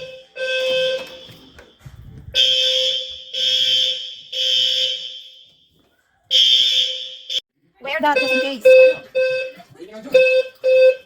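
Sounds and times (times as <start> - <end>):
fire alarm horns buzzing: 0.0 - 1.6, 2.4 - 5.5, 6.3 - 11.0.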